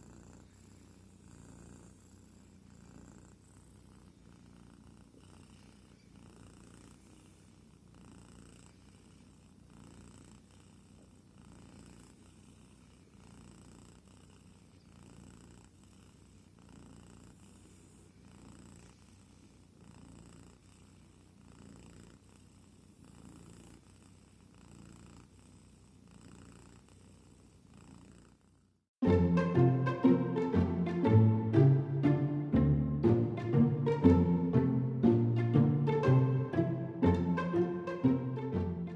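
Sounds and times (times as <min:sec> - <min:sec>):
kitten purring: 0:00.0 - 0:29.0
loud music with strings: 0:29.0 - 0:38.9.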